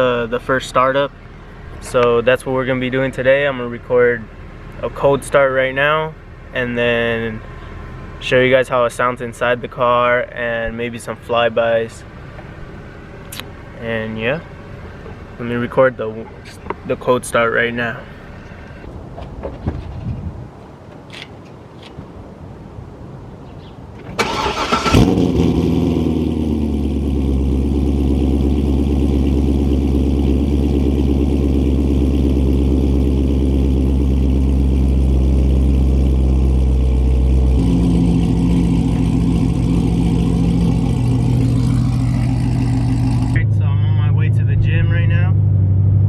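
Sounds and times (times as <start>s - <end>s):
car engine revving and idling: 0.0s - 18.9s, 24.2s - 46.0s
starter cranking: 24.2s - 25.5s.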